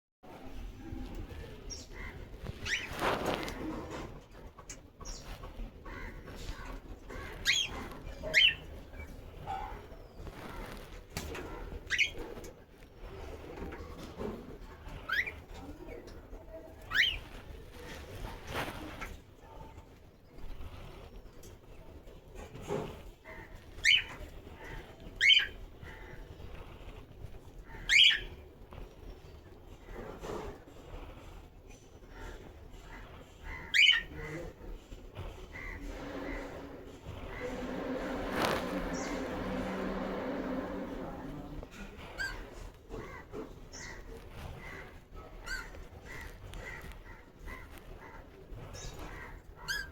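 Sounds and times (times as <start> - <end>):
cockatiel chirping: 42.2 - 42.4, 49.6 - 49.9.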